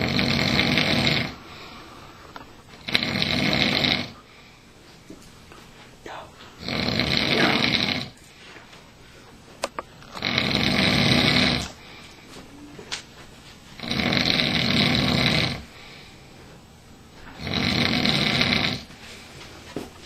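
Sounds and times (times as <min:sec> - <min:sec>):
man snoring: 0:00.0 - 0:01.7, 0:02.8 - 0:04.2, 0:06.1 - 0:08.2, 0:10.2 - 0:11.8, 0:13.8 - 0:15.7, 0:17.4 - 0:18.9.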